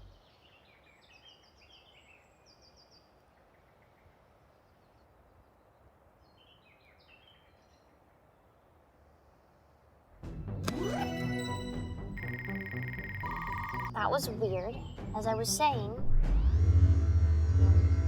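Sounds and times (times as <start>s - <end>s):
bird chirps: 12.2s - 14.0s.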